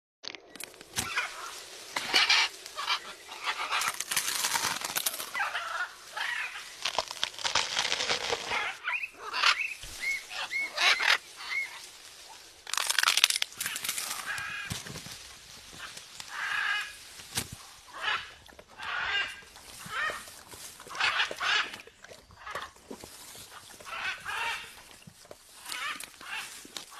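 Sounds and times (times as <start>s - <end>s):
parrot squawking and chirping: 8.0s - 11.8s.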